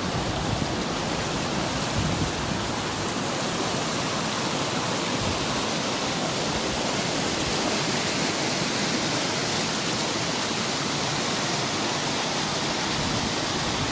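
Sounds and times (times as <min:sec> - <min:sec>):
river rushing over rocks: 0:00.0 - 0:13.9.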